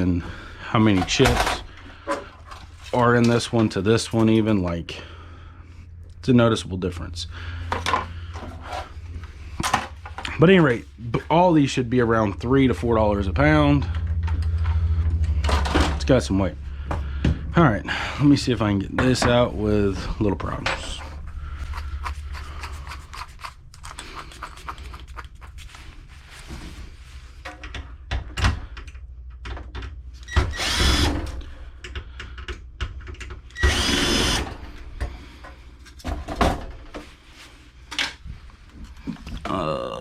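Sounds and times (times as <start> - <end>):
power drill whirring: 30.3 - 31.4, 33.6 - 34.6.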